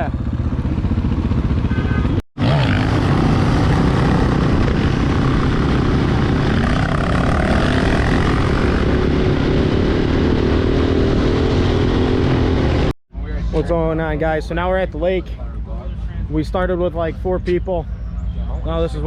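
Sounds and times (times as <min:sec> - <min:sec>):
dirt bike engine running: 0:00.0 - 0:12.9.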